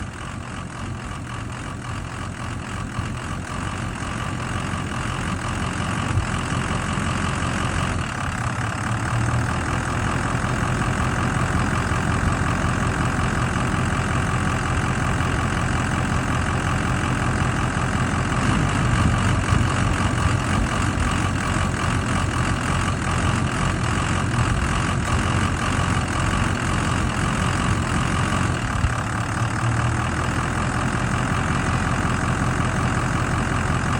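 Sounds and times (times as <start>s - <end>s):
diesel engine rough idle: 0.0s - 33.9s.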